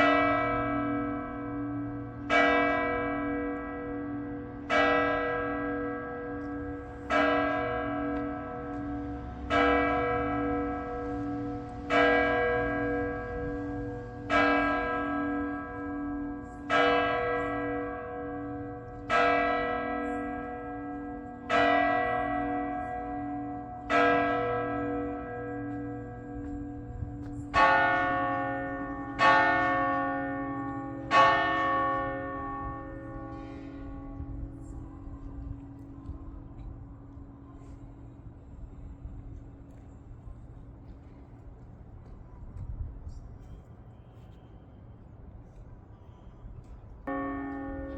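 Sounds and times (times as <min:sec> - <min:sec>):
church bell tolling: 0:00.0 - 0:37.4, 0:47.0 - 0:47.9.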